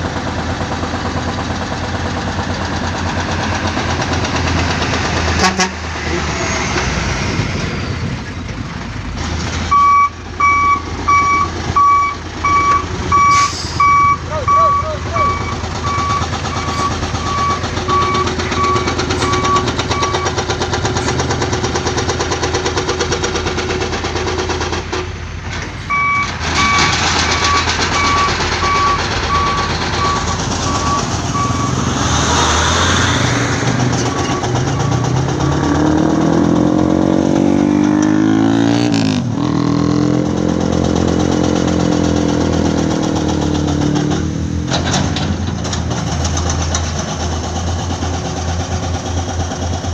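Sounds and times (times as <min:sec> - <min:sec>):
diesel engine rumble: 0:00.0 - 0:49.9
truck reversing alarm beeping: 0:09.7 - 0:21.2, 0:25.9 - 0:36.4.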